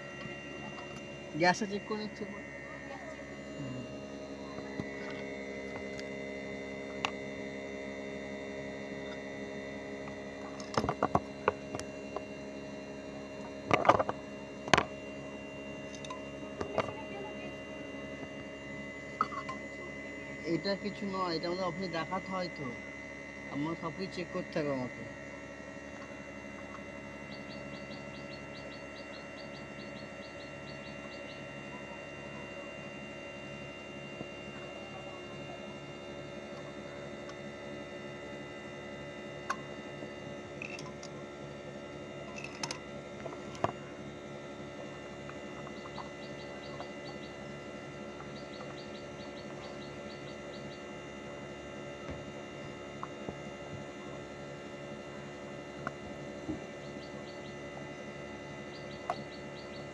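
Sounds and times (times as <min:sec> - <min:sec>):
air conditioner unit humming: 0:00.0 - 0:59.9
faint high chirping trills: 0:26.0 - 0:33.8, 0:44.0 - 0:51.2, 0:56.6 - 0:59.9.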